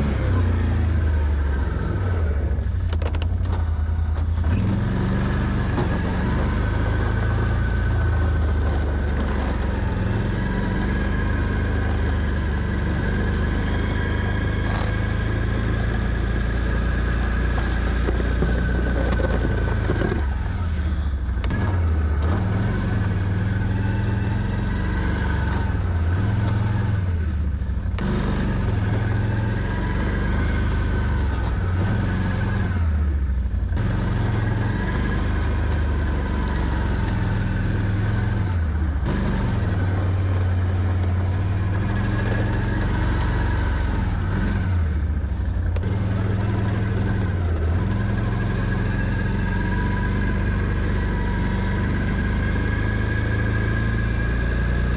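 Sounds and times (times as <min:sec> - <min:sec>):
atv engine revving under load: 0:00.0 - 0:54.9.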